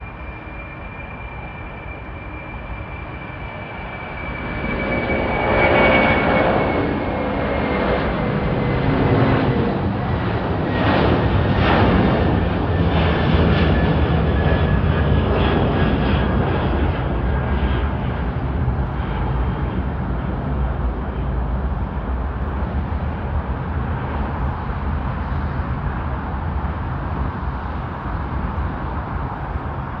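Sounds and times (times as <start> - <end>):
deep jet engine rumble: 0.0 - 30.0
jet engines whine: 0.0 - 30.0.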